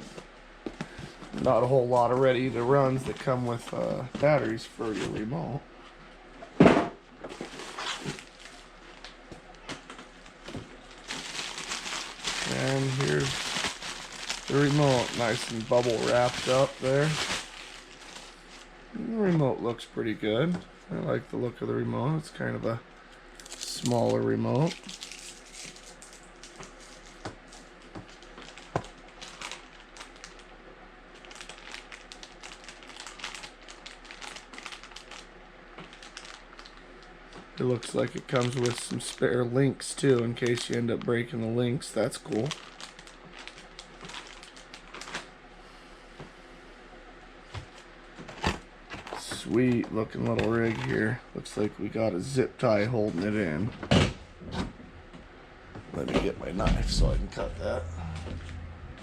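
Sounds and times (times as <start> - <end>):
packaging clicks and rustles: 9.7 - 18.6, 23.4 - 30.5, 31.2 - 36.8, 37.6 - 39.2, 40.0 - 41.1, 42.2 - 45.3.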